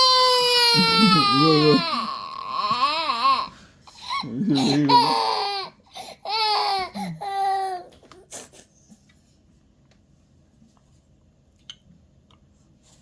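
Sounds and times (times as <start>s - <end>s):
baby whining cries: 0.0s - 8.0s.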